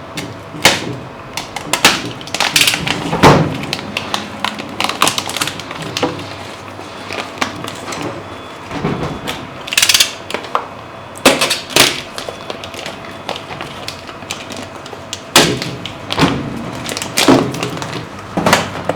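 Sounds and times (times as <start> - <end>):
knocks and clicks of unpacking: 0.2 - 18.9
packaging scraping rustle: 1.6 - 9.7, 11.4 - 18.9.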